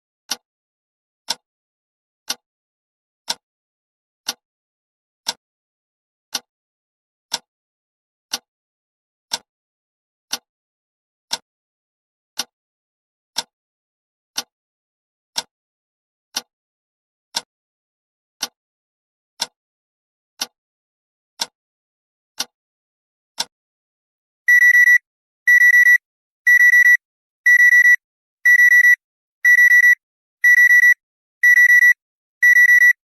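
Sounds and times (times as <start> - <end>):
clock ticking: 24.5 - 33.0
timer alarm high electronic beeps: 24.5 - 33.0.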